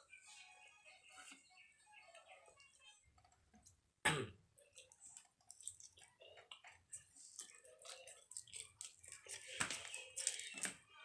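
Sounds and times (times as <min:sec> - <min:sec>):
crunchy chewing: 0:04.6 - 0:10.7.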